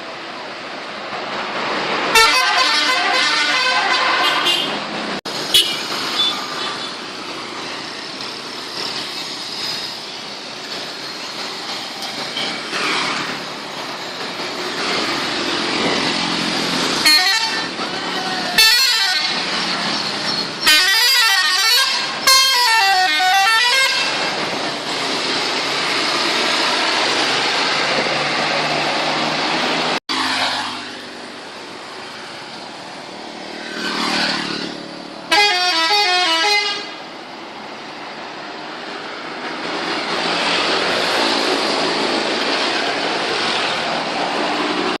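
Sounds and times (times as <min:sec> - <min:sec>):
traffic noise: 0:00.0 - 0:45.0
musical air horns: 0:02.1 - 0:04.8, 0:17.0 - 0:17.7, 0:20.6 - 0:24.2, 0:35.3 - 0:37.0.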